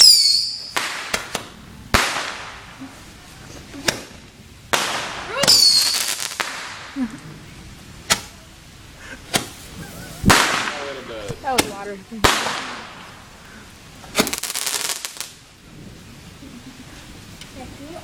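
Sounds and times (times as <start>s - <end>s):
firework whistle: 0.0s - 1.2s, 5.3s - 6.4s
fireworks pops and bangs: 0.0s - 7.2s, 8.0s - 8.4s, 9.3s - 13.4s, 14.0s - 15.8s.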